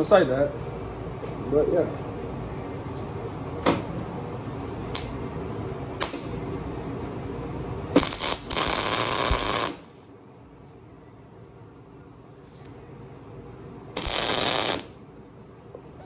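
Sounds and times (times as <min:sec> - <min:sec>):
steady hum: 0:00.0 - 0:16.0
welding arc crackling: 0:08.0 - 0:10.0, 0:14.0 - 0:15.0.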